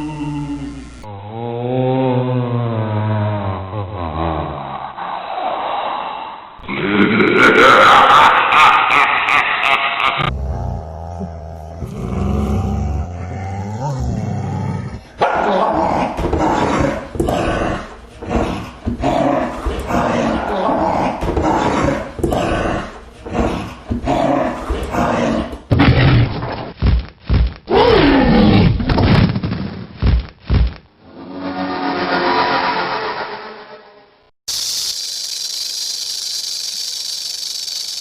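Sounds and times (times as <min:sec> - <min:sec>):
creature growling and snarling: 0:03.0 - 0:26.4.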